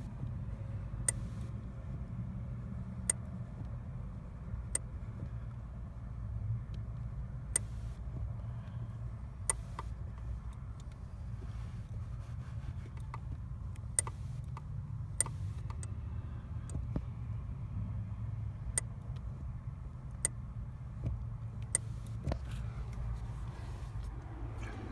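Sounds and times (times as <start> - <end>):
car engine idling: 0.0 - 24.9
clutch pedal clicking: 1.0 - 1.6, 6.7 - 11.9, 12.5 - 16.0, 16.6 - 17.1, 18.7 - 24.9.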